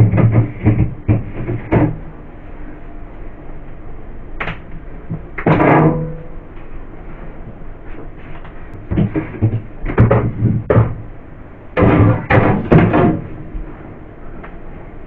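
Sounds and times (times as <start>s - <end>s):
things knocking in a fridge: 0.0s - 2.1s, 4.4s - 6.1s, 8.8s - 11.0s, 11.8s - 13.4s.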